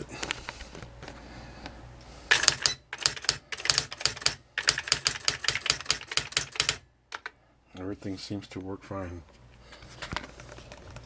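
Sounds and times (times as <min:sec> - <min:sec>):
faint hum: 0:00.0 - 0:11.0
typewriter strikes: 0:02.3 - 0:07.3.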